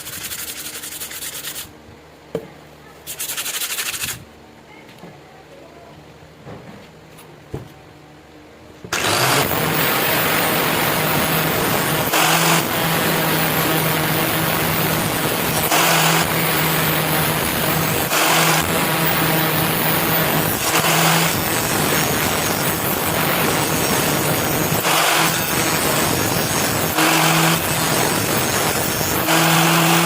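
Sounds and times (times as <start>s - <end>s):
electric grinder grinding steel: 8.9s - 30.0s.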